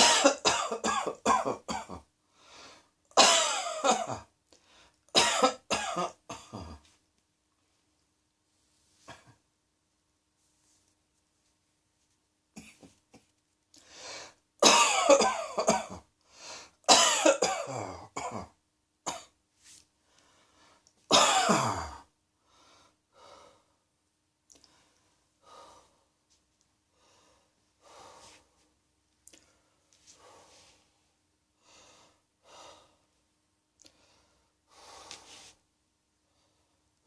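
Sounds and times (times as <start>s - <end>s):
person coughing harshly: 0.0s - 2.1s, 3.2s - 4.3s, 5.2s - 6.9s, 14.6s - 16.1s, 16.9s - 19.3s, 21.1s - 22.1s.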